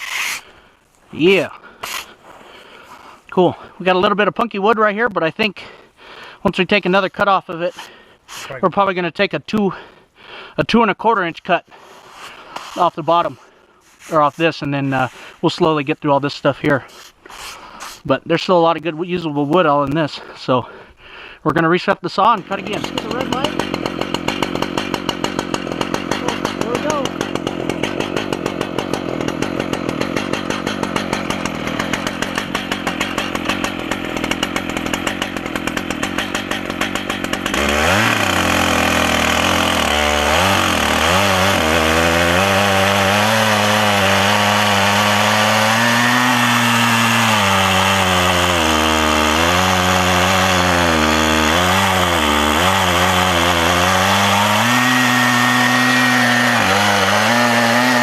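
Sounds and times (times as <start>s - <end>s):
chainsaw running under load: 22.3s - 58.0s.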